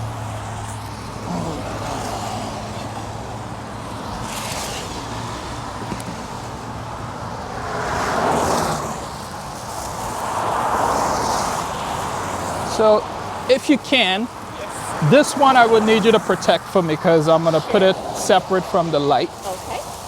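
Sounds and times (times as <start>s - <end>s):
traffic on wet road: 0.0s - 20.0s
vehicles passing: 0.0s - 20.0s
heavy rain hiss: 8.0s - 20.0s.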